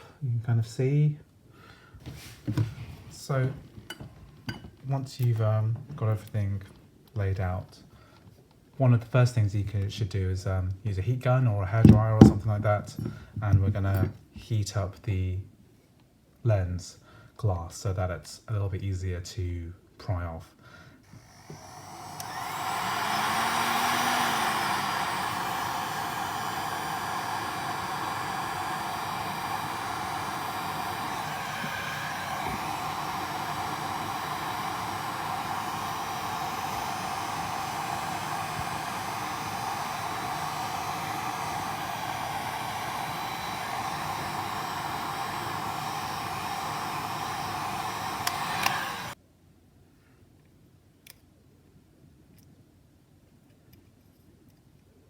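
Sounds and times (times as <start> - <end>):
hot-air blower running: 11.8 - 12.4, 21.0 - 49.2.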